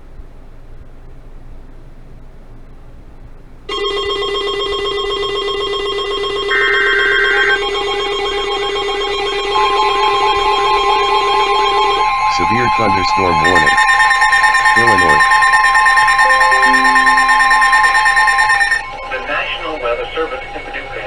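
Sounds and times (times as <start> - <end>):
electronic alert tones: 12.4 - 18.8.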